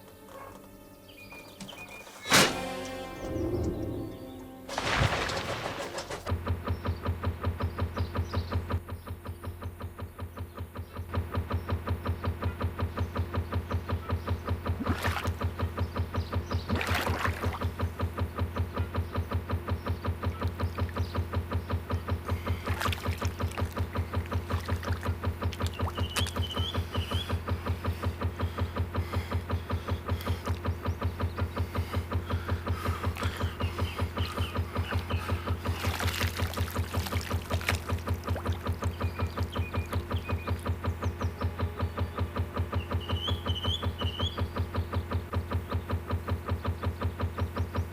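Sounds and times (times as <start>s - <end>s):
steam locomotive chuffing: 1.1s - 16.7s, 17.6s - 47.9s
faint wavering high tone: 2.0s - 4.7s.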